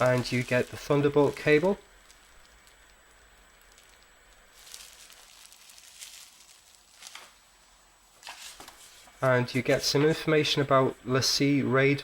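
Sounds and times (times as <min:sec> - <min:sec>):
packaging rustling and crinkling: 0:00.0 - 0:07.6, 0:08.2 - 0:09.8.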